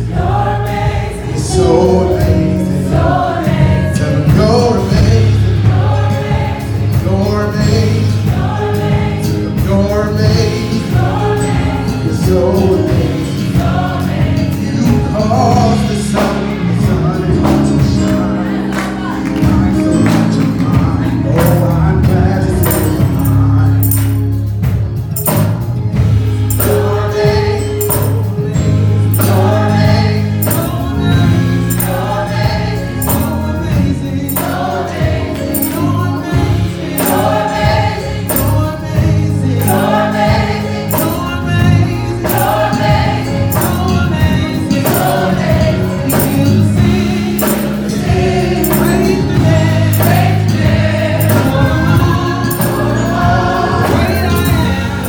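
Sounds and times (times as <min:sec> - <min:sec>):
gospel choir singing: 0:00.0 - 0:55.0
high percussion strikes: 0:21.4 - 0:21.9, 0:22.6 - 0:24.4, 0:25.2 - 0:25.7, 0:26.5 - 0:28.5, 0:29.1 - 0:33.7, 0:34.3 - 0:36.3, 0:37.0 - 0:39.0, 0:39.6 - 0:55.0.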